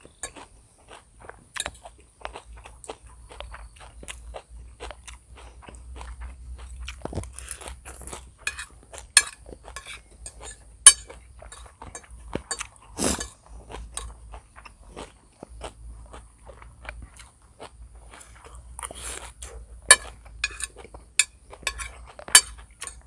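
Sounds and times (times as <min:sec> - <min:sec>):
chewing and crunching: 0:00.0 - 0:23.0
cutlery clinking against dish: 0:00.2 - 0:00.4, 0:01.6 - 0:01.8, 0:08.4 - 0:13.4, 0:19.9 - 0:23.0.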